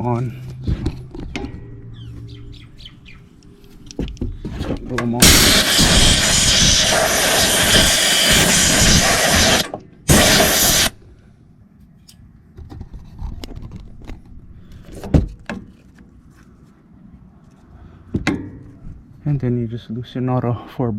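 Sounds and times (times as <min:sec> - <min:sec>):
compressed air blow gun blasting: 0:05.2 - 0:11.0.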